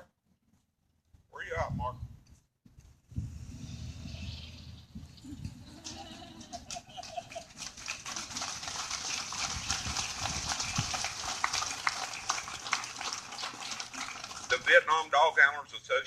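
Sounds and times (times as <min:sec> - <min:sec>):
crowd applauding: 0:05.7 - 0:15.1.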